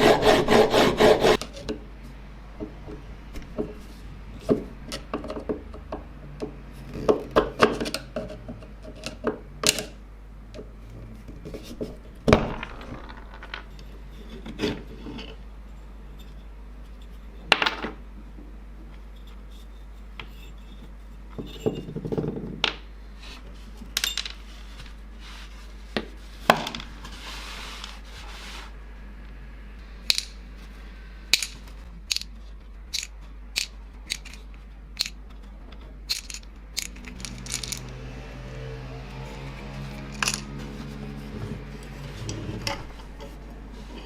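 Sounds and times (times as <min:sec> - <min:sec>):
metallic clicks and knocks: 0:31.3 - 0:38.0.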